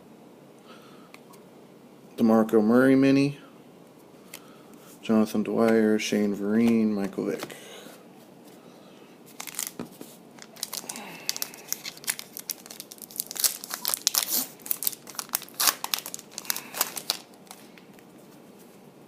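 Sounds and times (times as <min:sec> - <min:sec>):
foil wrapper tearing and crinkling: 0:09.3 - 0:09.8, 0:10.4 - 0:17.8.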